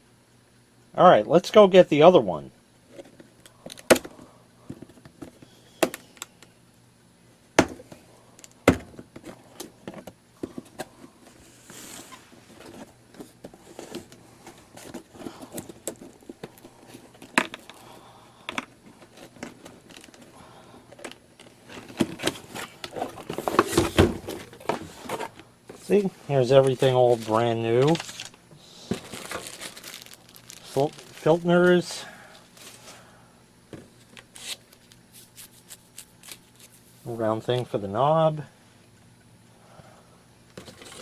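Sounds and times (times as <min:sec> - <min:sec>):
faint steady hum: 0:00.0 - 0:41.0
objects being handled: 0:07.6 - 0:33.0.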